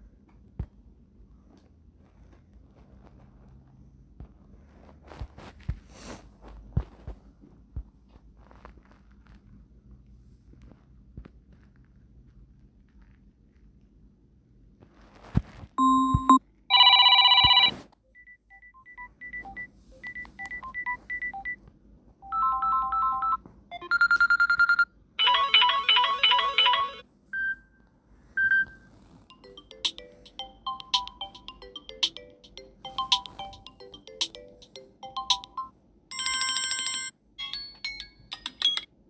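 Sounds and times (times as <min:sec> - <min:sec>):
phone ringtones: 0:15.8 - 0:21.6, 0:22.2 - 0:27.6, 0:28.4 - 0:38.9.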